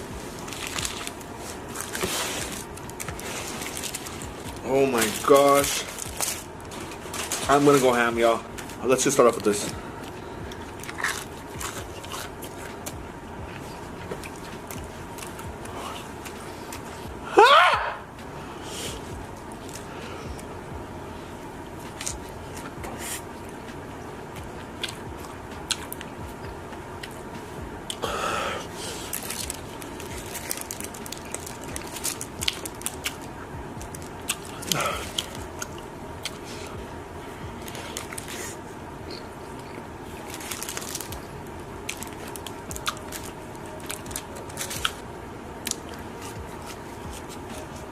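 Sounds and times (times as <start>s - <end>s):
crisp bites and chewing: 0.4s - 7.8s, 8.6s - 13.0s, 29.0s - 36.7s, 37.6s - 45.0s, 45.6s - 47.9s
person chewing: 9.6s - 17.0s, 24.3s - 27.2s, 27.8s - 36.8s, 37.5s - 45.0s.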